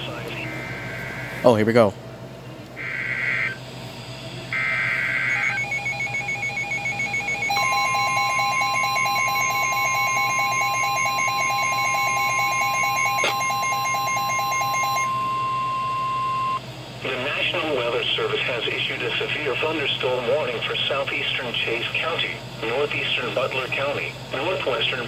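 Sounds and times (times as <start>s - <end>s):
screechy warbling data burst: 2.8s - 3.6s, 4.5s - 16.6s
steady warning alarm tone: 4.5s - 16.6s
rapid even beeping: 4.6s - 16.6s.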